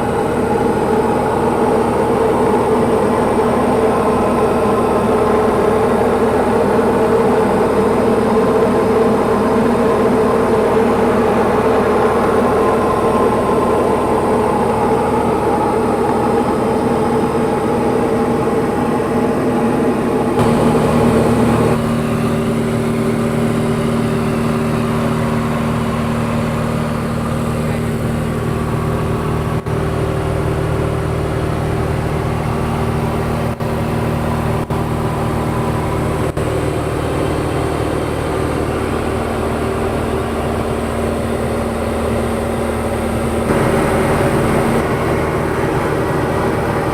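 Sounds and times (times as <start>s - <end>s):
aircraft engine and propeller drone: 0.0s - 46.9s.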